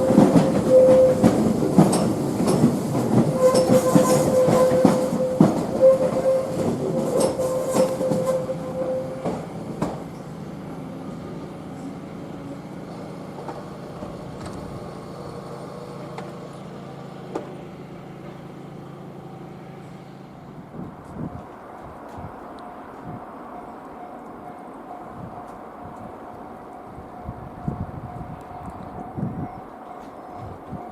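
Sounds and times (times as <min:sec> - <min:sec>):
train wheels clicking over rail joints: 0:00.0 - 0:10.3, 0:12.9 - 0:16.6, 0:17.2 - 0:17.6
faint train rumble: 0:00.0 - 0:30.9
train whine: 0:00.0 - 0:30.9.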